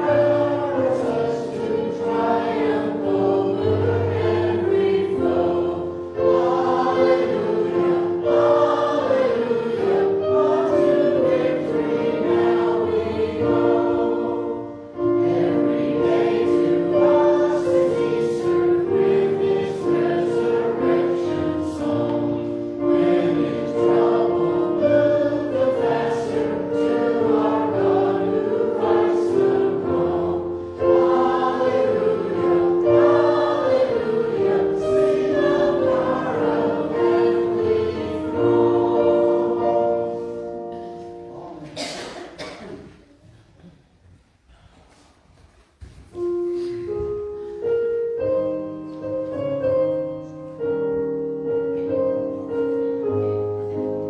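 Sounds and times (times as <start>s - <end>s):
instrumental accompaniment: 0.0s - 41.9s
congregation singing a hymn: 0.0s - 43.0s, 46.4s - 54.0s.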